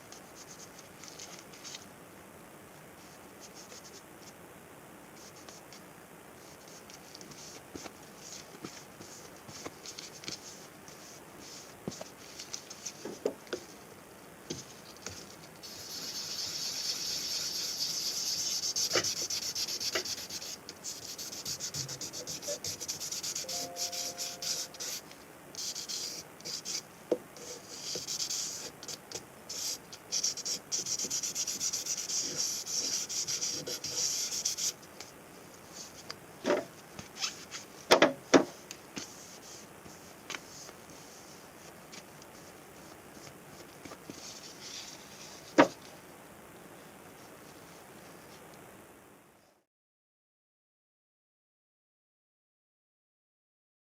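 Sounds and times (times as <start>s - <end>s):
sandpaper rubbing on metal: 15.6s - 25.0s.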